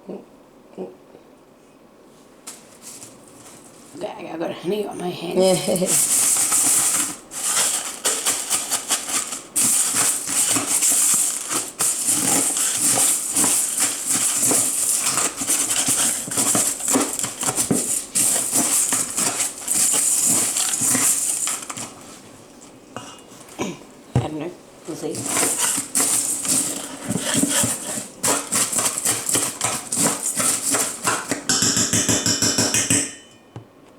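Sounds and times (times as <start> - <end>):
cornflakes being stirred: 5.5 - 22.5, 24.9 - 33.0.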